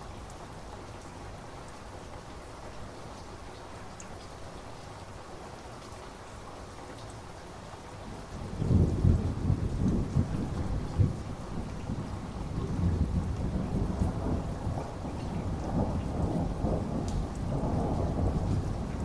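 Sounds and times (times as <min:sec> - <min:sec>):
steady rain: 0:00.0 - 0:19.0
rolling thunder rumble: 0:08.4 - 0:19.0.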